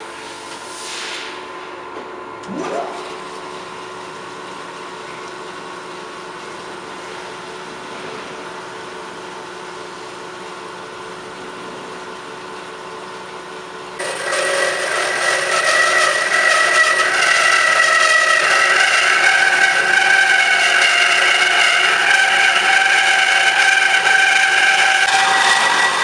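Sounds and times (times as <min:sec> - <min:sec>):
band saw motor hum: 0:14.0 - 0:26.0
saw blade whining cutting metal: 0:14.0 - 0:26.0.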